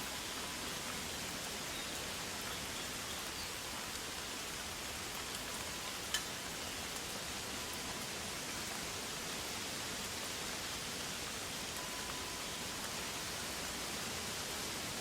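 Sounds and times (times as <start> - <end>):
forest ambience hiss: 0.0 - 15.0.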